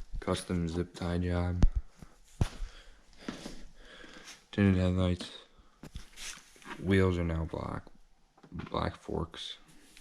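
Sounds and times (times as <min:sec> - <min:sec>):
faint breathing: 0:01.6 - 0:04.5
rustling near microphone: 0:05.8 - 0:07.1.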